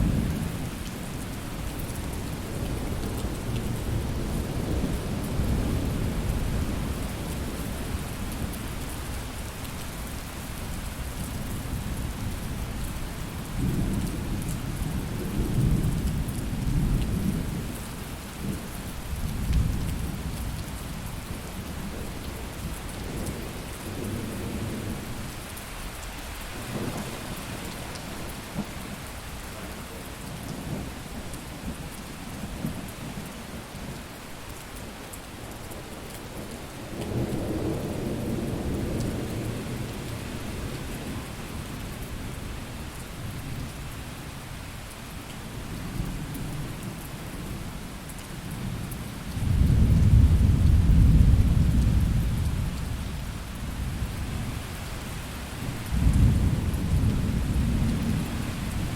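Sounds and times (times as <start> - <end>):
steady rain: 0.0 - 58.9
rolling thunder rumbles: 48.7 - 54.6, 55.6 - 58.9.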